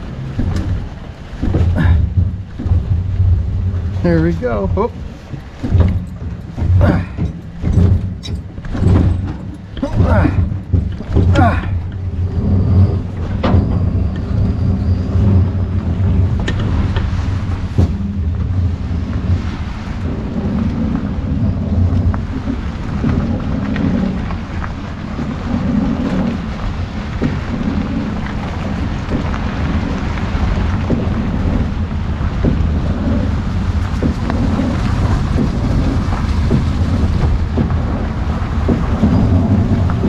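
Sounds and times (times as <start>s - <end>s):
wind buffeting microphone: 0.0s - 40.0s.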